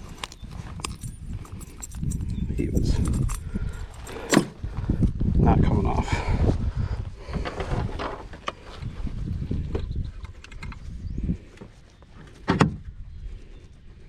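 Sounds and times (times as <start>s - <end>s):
handling clicks rustles and knocks: 0.0s - 4.6s, 10.2s - 10.8s.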